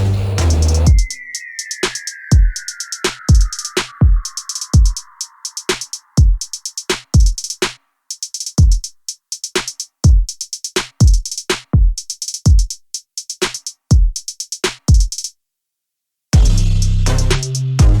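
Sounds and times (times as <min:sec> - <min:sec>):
rapid hi-hat rolls: 0:00.0 - 0:15.3, 0:16.4 - 0:18.0
deep kick drums: 0:11.8 - 0:12.7, 0:16.4 - 0:17.2, 0:17.8 - 0:18.0.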